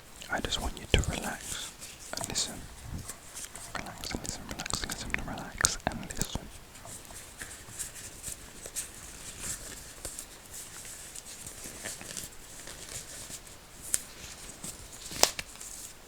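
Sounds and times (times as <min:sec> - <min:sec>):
glove rustling and crackling: 0:00.6 - 0:16.0.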